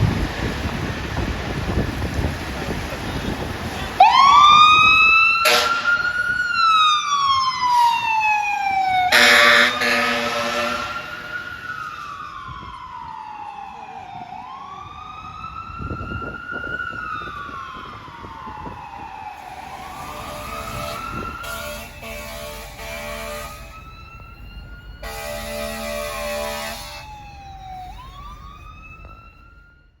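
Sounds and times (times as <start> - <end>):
fire truck siren wailing: 0.0 - 30.0
truck engine rumble: 0.0 - 30.0
air horn blasts: 5.4 - 6.2, 9.1 - 11.3, 19.4 - 23.9, 25.0 - 27.1.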